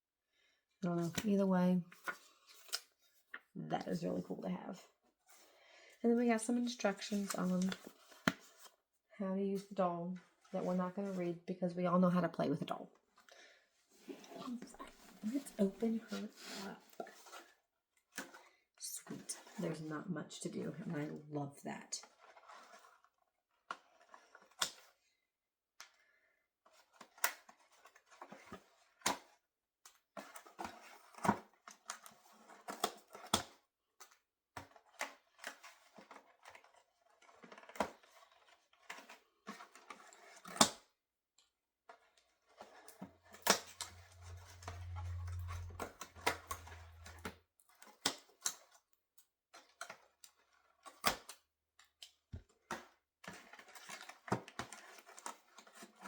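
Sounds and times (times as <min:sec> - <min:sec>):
plastic and cardboard packaging rustling: 0:34.7 - 0:40.5
low hum: 0:43.6 - 0:47.3.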